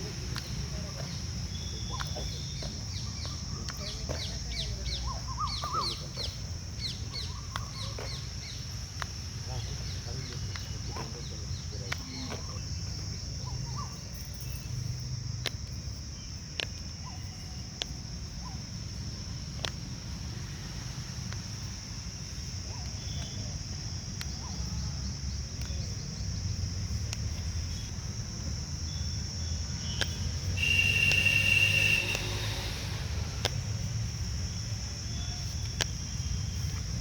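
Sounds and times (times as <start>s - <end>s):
crickets chirring: 0.0s - 37.0s
sharp clicks: 29.9s - 33.6s.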